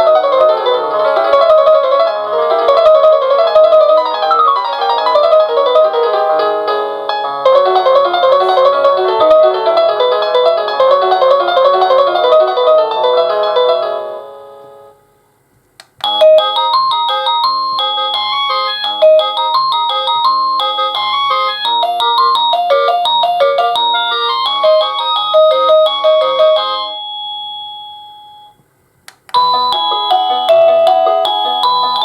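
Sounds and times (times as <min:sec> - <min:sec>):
doorbell receiver click: 0:15.8 - 0:17.1, 0:29.1 - 0:30.2
electronic doorbell chime tunes: 0:16.0 - 0:28.6, 0:29.3 - 0:32.0.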